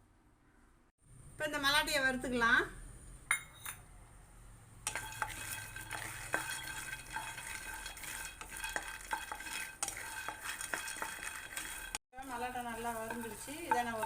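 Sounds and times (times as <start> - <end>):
spatula scraping pan: 4.9 - 14.0.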